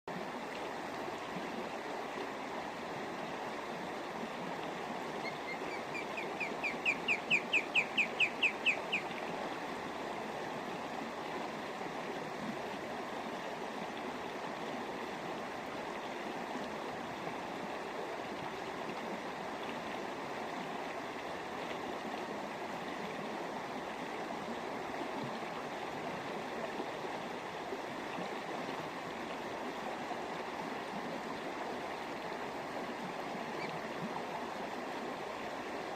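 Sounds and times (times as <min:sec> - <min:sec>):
osprey high whistled calls: 0:05.2 - 0:09.1, 0:33.6 - 0:33.8.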